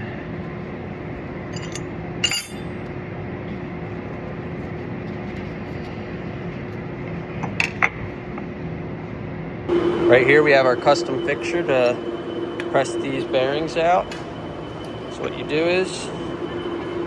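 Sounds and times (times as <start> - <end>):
steady background hum: 0.0 - 17.0
ringing metal clink: 1.6 - 2.9.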